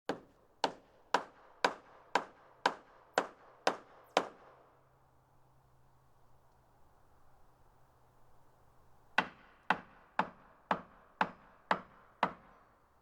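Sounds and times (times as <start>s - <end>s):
hammer striking wood: 0.1s - 4.6s, 9.2s - 12.7s.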